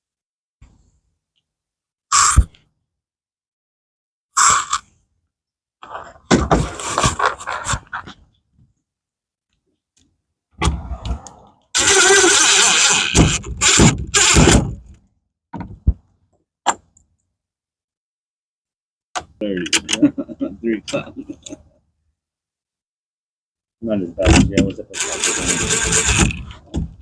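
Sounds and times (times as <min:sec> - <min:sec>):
screen door scraping and knocking: 0:25.4 - 0:27.0.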